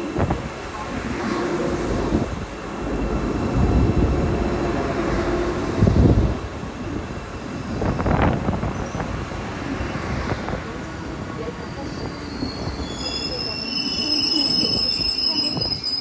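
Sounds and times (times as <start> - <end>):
train rumbling on rails: 0.0 - 16.0
high-pitched wheel squeal: 11.8 - 16.0.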